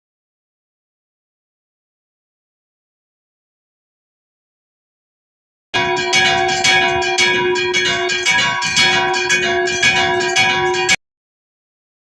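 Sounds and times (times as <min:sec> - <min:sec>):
church bells ringing rapidly: 0:05.8 - 0:11.0.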